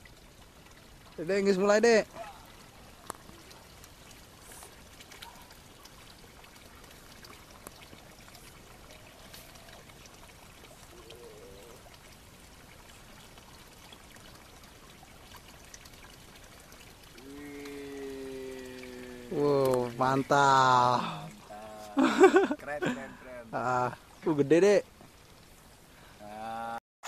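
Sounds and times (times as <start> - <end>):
flowing water: 0.0 - 26.8
small ticks: 3.0 - 5.5, 17.0 - 19.9.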